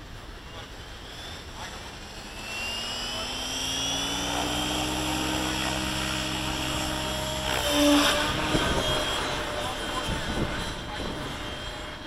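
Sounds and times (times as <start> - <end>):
model helicopter motor whine: 0.0 - 12.0.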